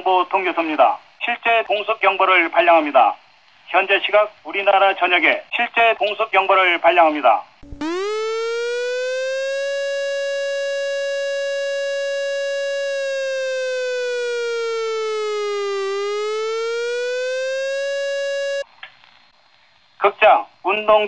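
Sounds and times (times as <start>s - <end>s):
air-raid warning siren: 7.6s - 18.6s.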